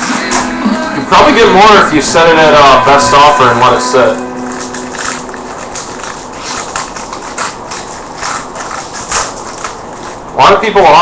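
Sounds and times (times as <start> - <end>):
cards and wrappers rustling: 4.4 - 11.0.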